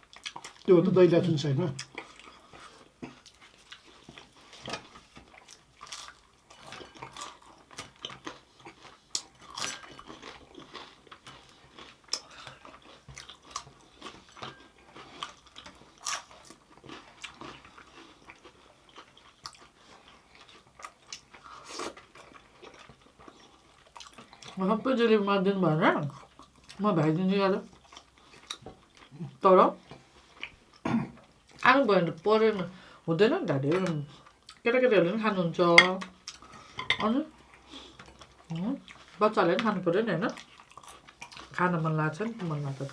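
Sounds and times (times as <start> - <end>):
chewing and biting food: 0.0 - 0.7, 1.8 - 24.6, 27.7 - 31.7, 36.1 - 39.2, 40.3 - 41.6.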